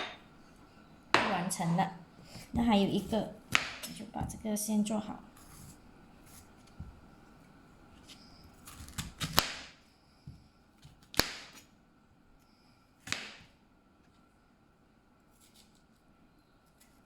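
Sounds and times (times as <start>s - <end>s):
knife chopping on cutting board: 3.0s - 4.0s, 13.0s - 13.5s.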